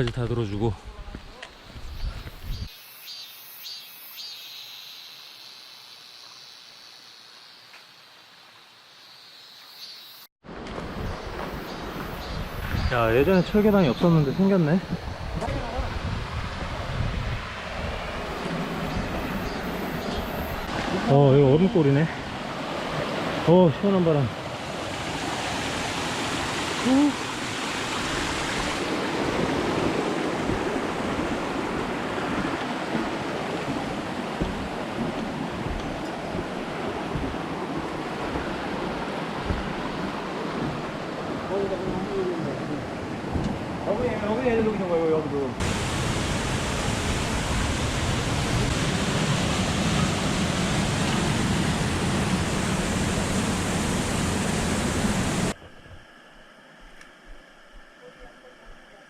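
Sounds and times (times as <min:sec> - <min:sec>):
mountain stream flowing over rocks: 0:45.6 - 0:55.6.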